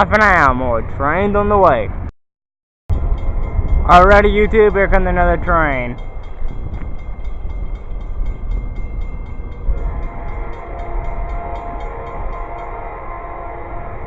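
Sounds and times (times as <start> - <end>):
train rumbling: 2.9 - 14.0
distant horn-like tone: 9.6 - 14.0.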